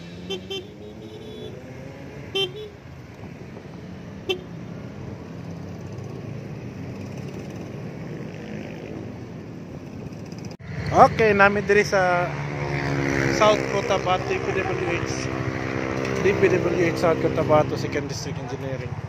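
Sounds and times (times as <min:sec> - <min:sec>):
motorcycle engine hum: 0:00.0 - 0:19.0
vehicle horn toots: 0:00.2 - 0:01.7, 0:02.3 - 0:02.8, 0:04.3 - 0:04.5.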